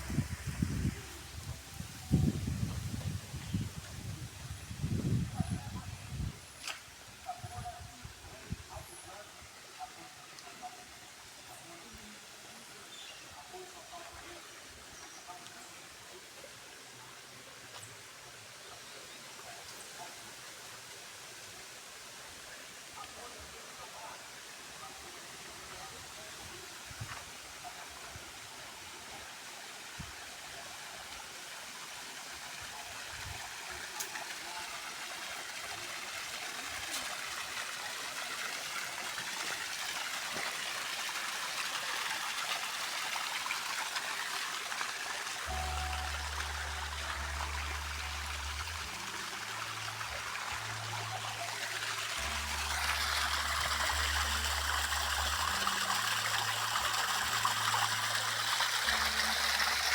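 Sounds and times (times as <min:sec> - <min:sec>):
stream water rushing: 0:00.0 - 0:18.5, 0:19.4 - 0:59.9
music with deep bass: 0:45.5 - 0:59.9.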